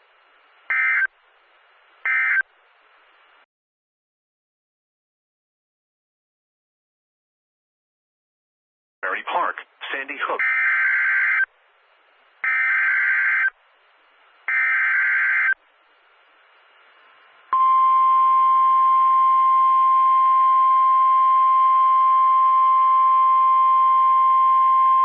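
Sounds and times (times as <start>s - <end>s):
steady alarm tone: 10.4s - 11.4s.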